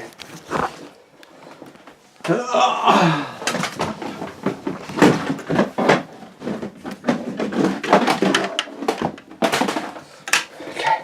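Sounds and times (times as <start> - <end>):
rustling of handled things: 0.0 - 2.3, 3.3 - 11.0
objects knocking and bumping: 3.4 - 11.0.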